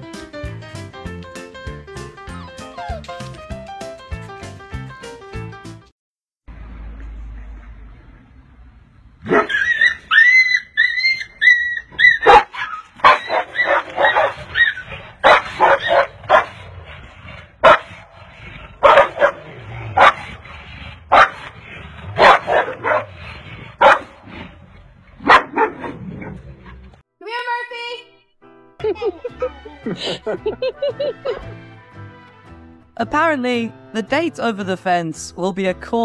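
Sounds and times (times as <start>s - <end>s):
dog yelping: 2.3s - 3.2s, 9.3s - 16.5s, 18.8s - 20.2s, 22.2s - 23.1s
dog barking: 9.2s - 10.2s, 12.0s - 16.6s, 17.6s - 17.9s, 18.8s - 20.3s, 21.1s - 21.4s, 22.2s - 23.2s, 23.8s - 24.2s, 25.2s - 26.0s.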